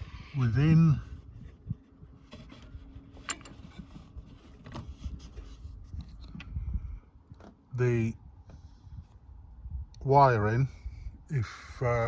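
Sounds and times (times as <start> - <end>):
handling clicks and knocks: 3.1 - 4.9.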